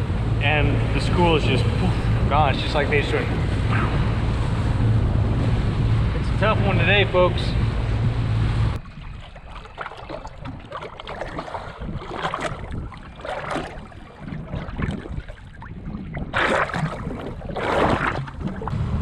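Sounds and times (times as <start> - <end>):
wind on microphone: 0.0 - 19.0
water slapping against boat hull: 8.8 - 18.8.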